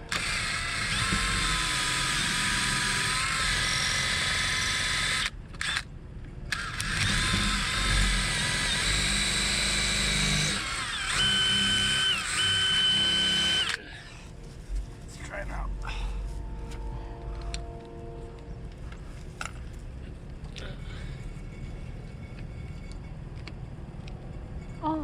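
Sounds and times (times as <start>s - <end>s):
power drill whining: 0.0s - 5.9s, 6.5s - 14.3s.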